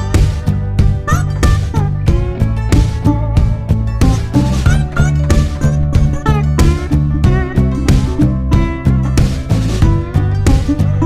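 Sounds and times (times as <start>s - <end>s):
guitar music with steady beat: 0.0s - 11.0s.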